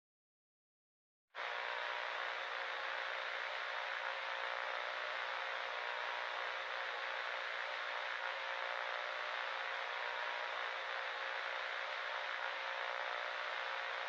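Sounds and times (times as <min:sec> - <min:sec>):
broadcast static hiss: 0:01.4 - 0:14.0.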